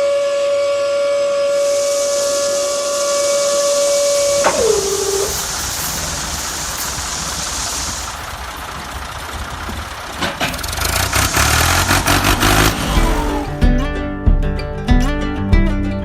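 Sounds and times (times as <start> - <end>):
steady hiss: 1.4 - 12.8
small engine running: 1.6 - 13.6.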